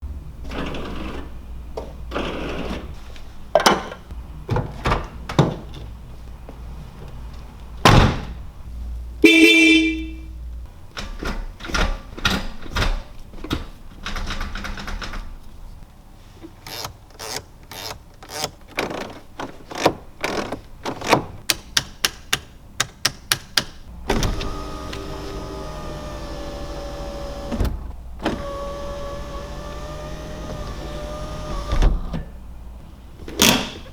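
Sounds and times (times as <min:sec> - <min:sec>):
car horn blast: 0:09.2 - 0:10.3.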